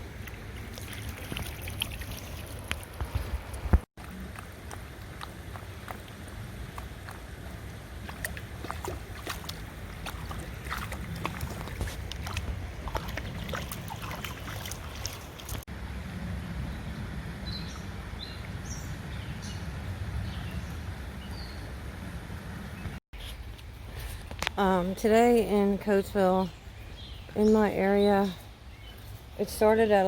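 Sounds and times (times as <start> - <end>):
fast stream water: 0.0 - 15.7
wind rumbling on microphone: 0.0 - 25.3
sharp splashing clicks: 0.2 - 15.6.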